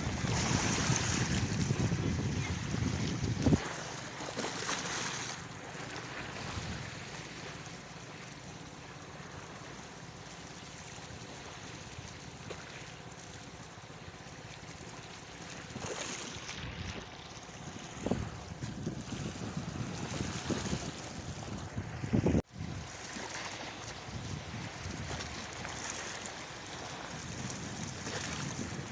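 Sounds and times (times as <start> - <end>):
wind buffeting microphone: 0.0 - 4.0, 6.3 - 7.1, 15.7 - 23.0, 23.9 - 25.8, 26.6 - 28.9
sea surf: 0.0 - 28.9.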